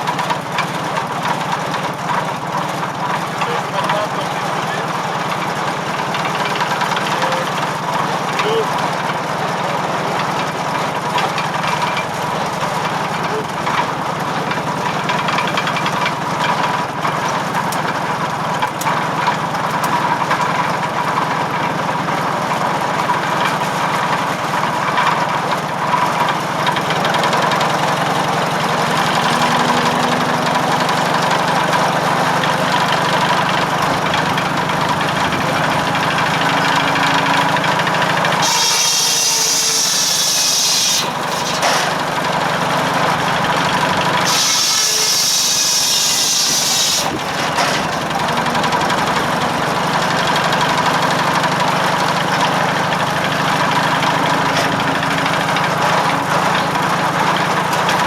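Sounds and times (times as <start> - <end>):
tractor engine running: 0.0 - 58.0
saw blade cutting wood: 27.1 - 50.0.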